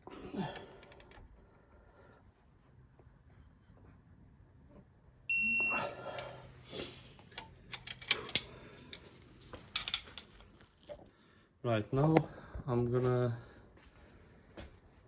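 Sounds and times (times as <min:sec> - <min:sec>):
high electronic beep: 0:05.3 - 0:05.8.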